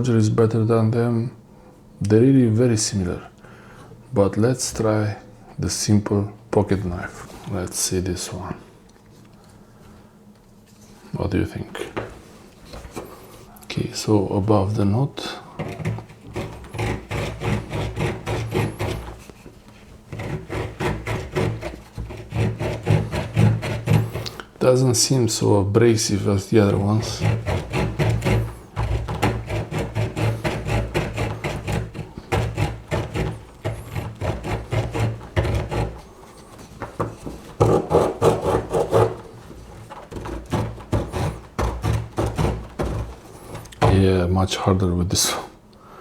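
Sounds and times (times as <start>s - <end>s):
knife sawing through wooden branch: 15.2s - 19.4s, 20.1s - 24.3s, 26.6s - 43.7s.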